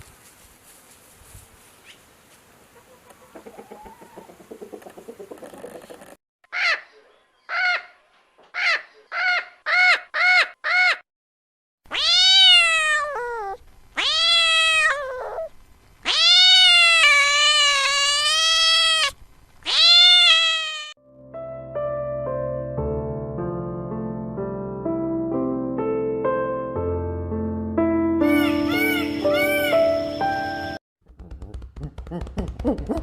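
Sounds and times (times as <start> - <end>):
cat meowing: 11.9 - 21.0.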